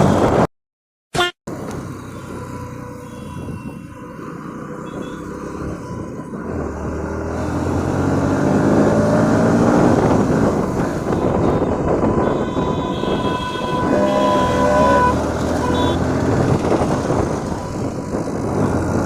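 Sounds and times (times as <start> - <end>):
motorcycle engine accelerating: 4.5 - 19.0.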